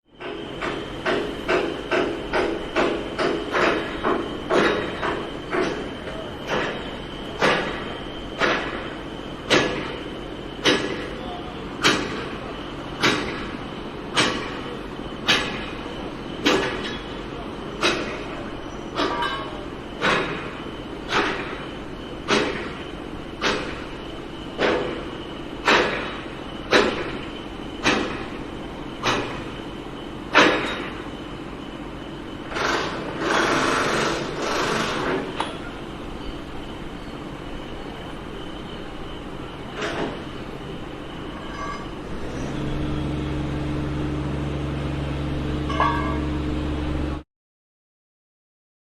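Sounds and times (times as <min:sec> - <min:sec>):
heavy machine engine humming: 0:00.1 - 0:47.2
ringing metal clank: 0:19.0 - 0:19.7, 0:41.3 - 0:42.0, 0:45.6 - 0:46.4
heavy demolition blows ringing: 0:45.5 - 0:46.7.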